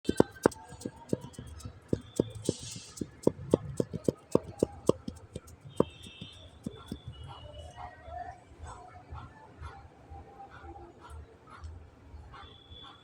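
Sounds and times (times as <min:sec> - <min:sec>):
sharp knocks: 0:00.0 - 0:07.1.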